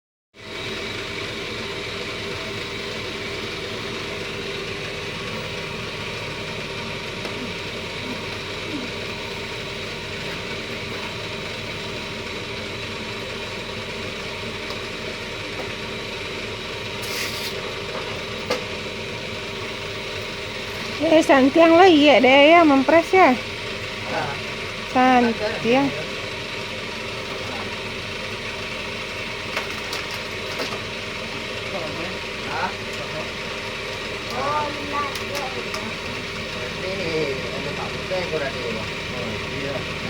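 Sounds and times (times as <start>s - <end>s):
cotton candy machine humming: 0.4s - 40.0s
short hiss: 17.0s - 17.6s.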